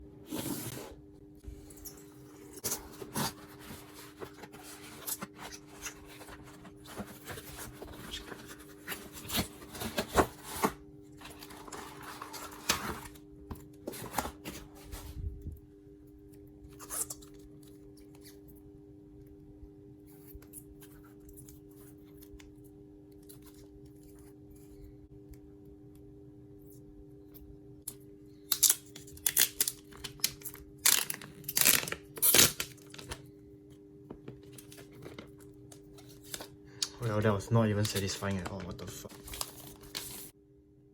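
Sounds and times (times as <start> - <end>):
steady low hum: 0.0 - 28.9
paper crinkling: 1.7 - 13.2, 37.6 - 40.3
cardboard packaging tearing: 2.6 - 13.2, 28.5 - 33.2.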